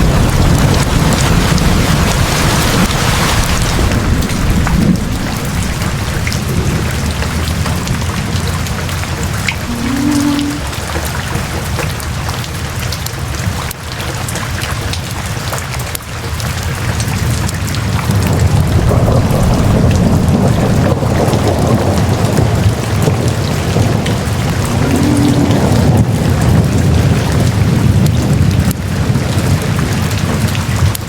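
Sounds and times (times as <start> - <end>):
thunder rumbling: 0.0 - 11.8, 18.1 - 29.6
steady rain falling: 0.0 - 31.0.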